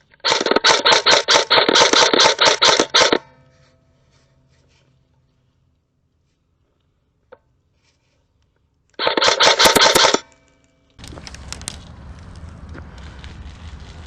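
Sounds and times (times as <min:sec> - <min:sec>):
airsoft rifle full-auto burst: 0:00.2 - 0:03.2, 0:09.0 - 0:10.3
sharp click: 0:09.0 - 0:10.6
rustling hiss: 0:11.0 - 0:14.0.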